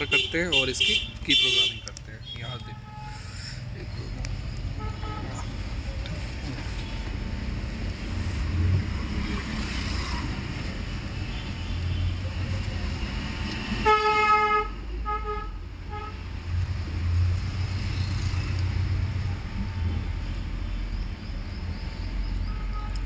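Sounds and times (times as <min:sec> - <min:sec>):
vehicle horn toots: 0:00.0 - 0:03.3, 0:13.8 - 0:16.2.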